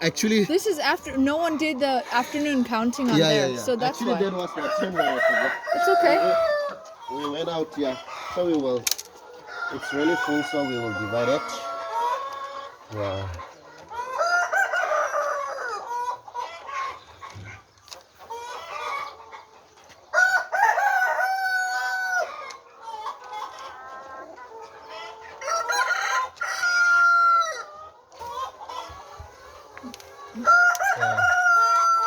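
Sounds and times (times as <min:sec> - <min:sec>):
chickens clucking: 0:00.0 - 0:32.0
rooster crowing: 0:03.1 - 0:06.8, 0:09.5 - 0:12.0, 0:14.2 - 0:15.8, 0:20.2 - 0:22.3, 0:25.4 - 0:27.7, 0:30.4 - 0:32.0.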